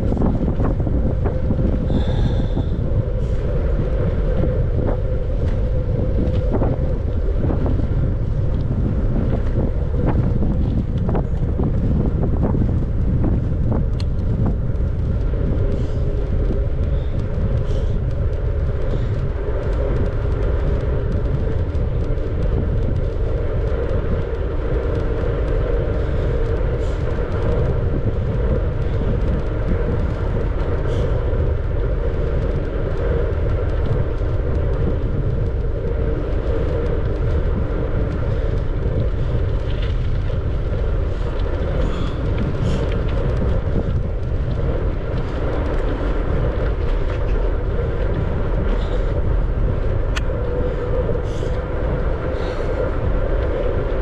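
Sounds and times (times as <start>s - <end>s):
bicycle tyre and road noise: 0.0s - 54.0s
wind over microphone: 0.0s - 54.0s.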